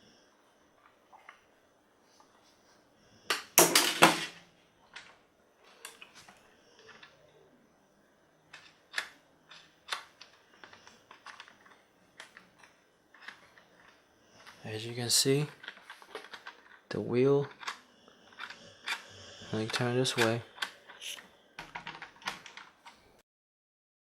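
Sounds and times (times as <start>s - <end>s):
plastic toy clicks and knocks: 8.5s - 14.6s, 15.2s - 16.8s, 17.4s - 23.0s.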